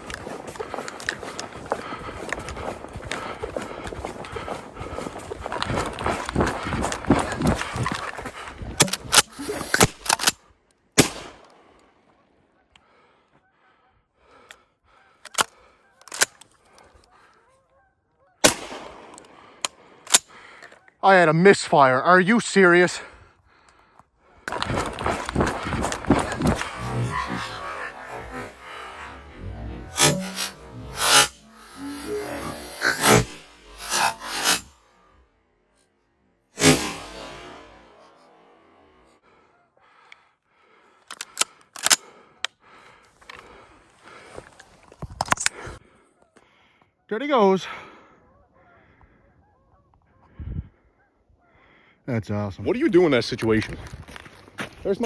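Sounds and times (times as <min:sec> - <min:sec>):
shotgun shot: 0:11.0 - 0:11.4, 0:18.4 - 0:19.3, 0:36.6 - 0:38.1
geese honking: 0:24.5 - 0:34.6
shotgun action clicking: 0:41.1 - 0:42.1.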